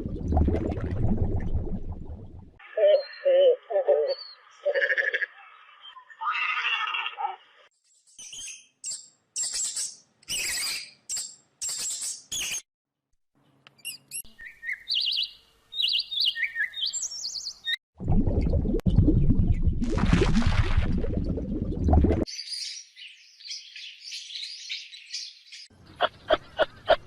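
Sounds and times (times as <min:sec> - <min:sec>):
bird chirps: 0:02.7 - 0:12.6, 0:13.8 - 0:17.8, 0:22.3 - 0:27.0.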